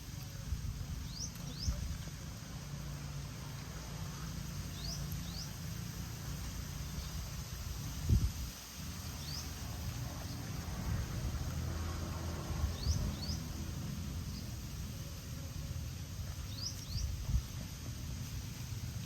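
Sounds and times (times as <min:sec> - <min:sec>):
steady low rumble: 0:00.0 - 0:19.0
small bird chirping: 0:09.1 - 0:09.6.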